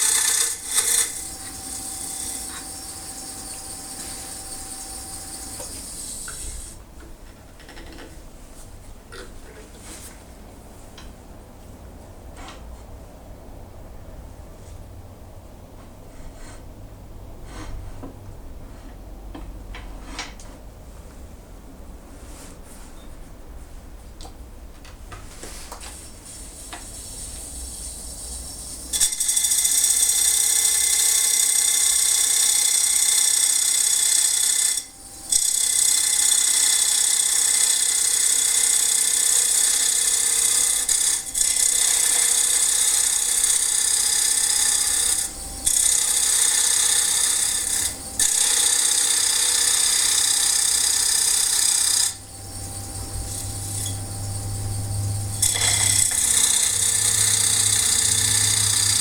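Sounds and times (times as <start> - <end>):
lathe motor humming: 0.0 - 6.8, 26.9 - 59.0.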